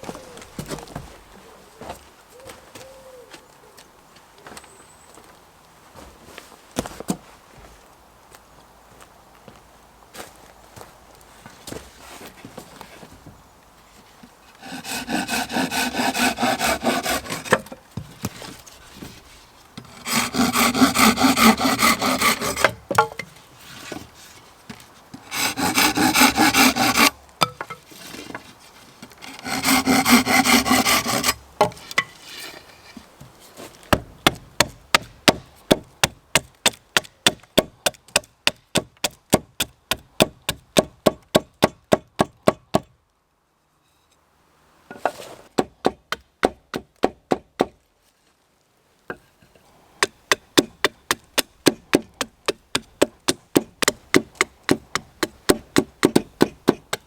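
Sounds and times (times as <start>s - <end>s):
hand saw cutting wood: 14.4s - 24.5s, 25.2s - 33.1s, 50.0s - 57.0s.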